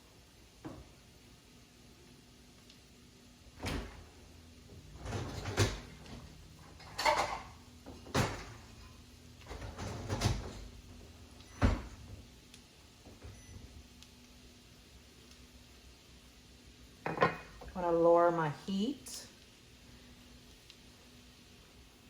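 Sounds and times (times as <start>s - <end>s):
cookware knocks and scrapes: 6.8s - 8.5s, 17.0s - 17.7s.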